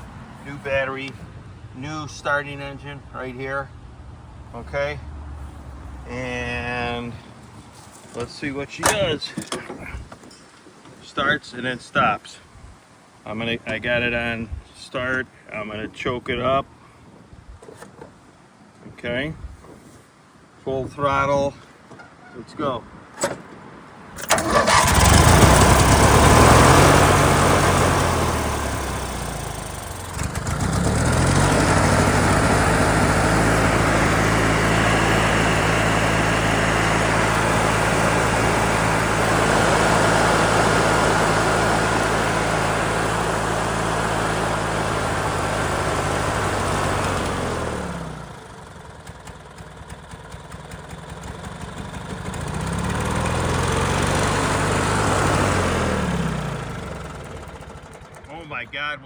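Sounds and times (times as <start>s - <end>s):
riding mower engine running: 24.2s - 58.8s.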